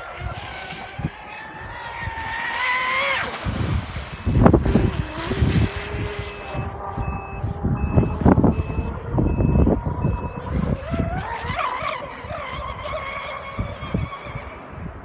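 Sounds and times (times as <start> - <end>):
electric motor whine: 0.0 - 15.0
wind rumble: 0.0 - 15.0
high electronic beep: 5.0 - 11.2.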